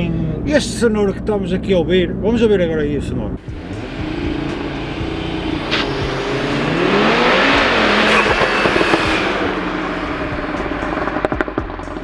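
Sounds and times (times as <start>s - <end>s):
car engine revving: 3.0s - 12.0s
exhaust pops: 3.4s - 12.0s.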